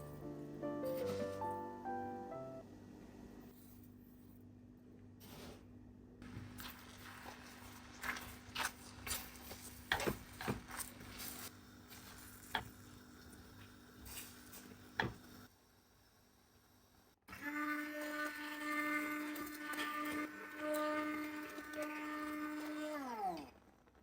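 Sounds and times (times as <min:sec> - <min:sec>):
electric mixer whine: 0:17.3 - 0:23.2.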